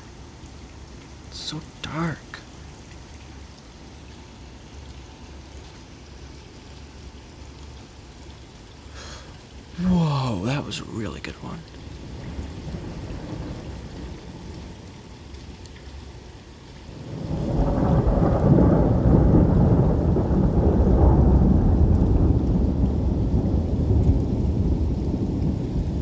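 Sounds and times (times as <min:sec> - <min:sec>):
rain hiss: 0:00.0 - 0:26.0
thunder rumbling: 0:09.7 - 0:15.6, 0:16.8 - 0:26.0.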